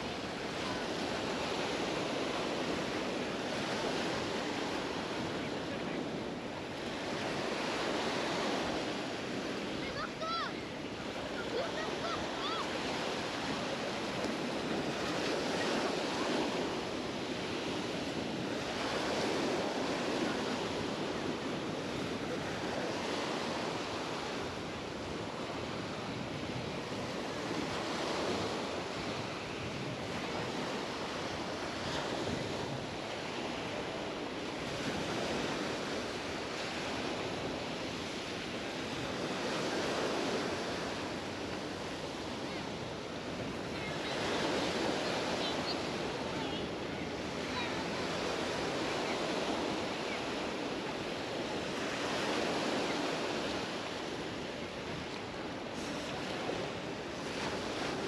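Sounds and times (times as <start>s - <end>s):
waves breaking on beach: 0.0s - 58.0s.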